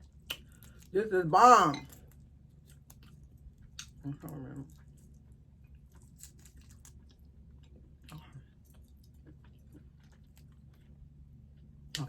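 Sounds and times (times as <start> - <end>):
low steady hum: 0.0 - 12.0
person chewing with mouth clicks: 0.2 - 0.9, 2.9 - 4.9.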